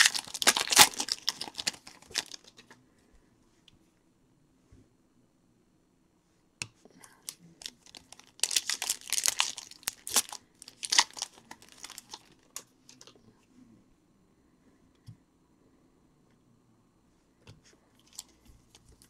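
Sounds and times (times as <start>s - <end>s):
card pack wrapper crinkling: 0.0s - 2.7s, 7.2s - 13.1s.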